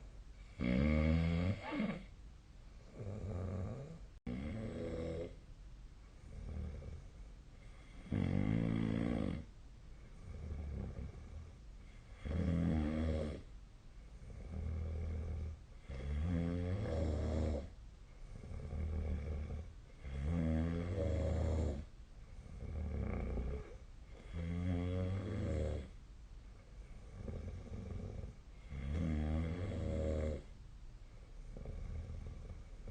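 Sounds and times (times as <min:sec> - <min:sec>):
quiet breathing: 0:00.0 - 0:32.9
person snoring: 0:00.5 - 0:02.1, 0:02.9 - 0:05.4, 0:07.9 - 0:09.5, 0:14.2 - 0:17.7, 0:18.3 - 0:25.9, 0:27.1 - 0:30.5.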